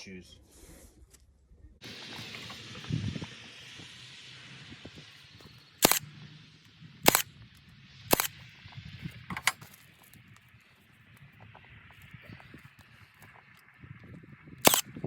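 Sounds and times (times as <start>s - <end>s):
hiss: 1.8s - 13.8s.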